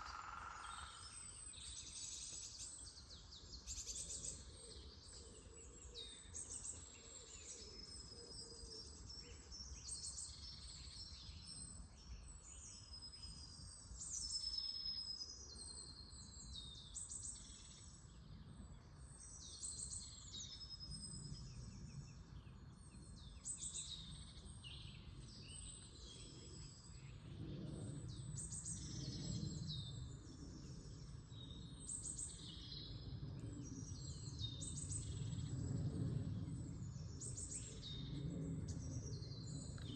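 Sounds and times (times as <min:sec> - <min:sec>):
songbirds singing and chirping: 0:00.0 - 0:39.9
faint low rumble: 0:20.3 - 0:39.9.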